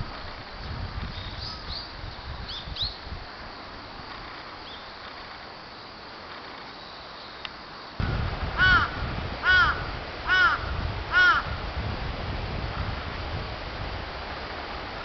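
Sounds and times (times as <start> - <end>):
low rumble: 8.0 - 12.9
crow cawing: 8.6 - 11.5.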